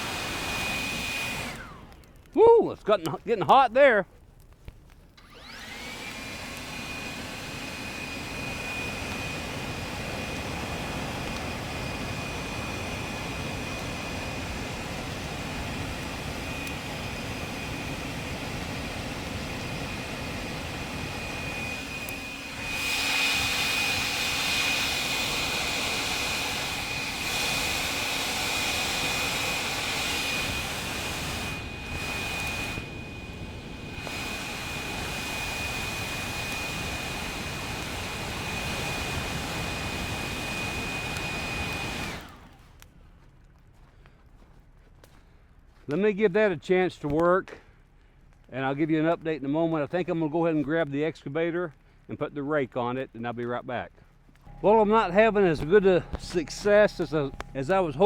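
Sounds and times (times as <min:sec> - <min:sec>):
blower whining: 0:00.0 - 0:04.1, 0:05.1 - 0:42.9, 0:54.3 - 0:58.0
rushing air: 0:16.4 - 0:42.3.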